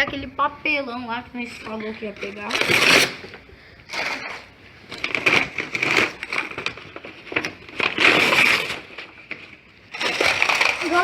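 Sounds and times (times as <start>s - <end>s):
cardboard being crushed: 3.9s - 11.0s.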